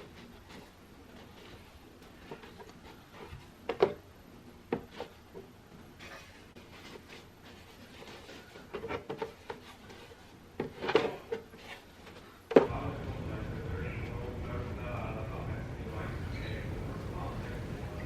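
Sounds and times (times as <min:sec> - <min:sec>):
objects rubbing and scraping: 0:15.9 - 0:18.0.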